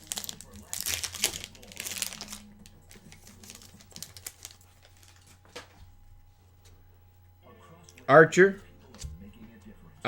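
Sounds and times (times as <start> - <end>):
trading cards rustling and clicking: 0.0 - 5.8.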